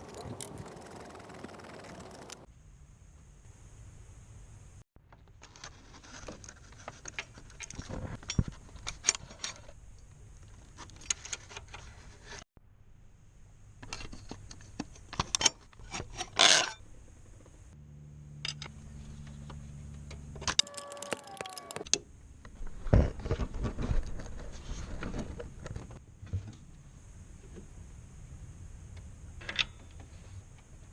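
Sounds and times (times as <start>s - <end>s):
hand tools and metal parts clinking: 20.6s - 21.8s.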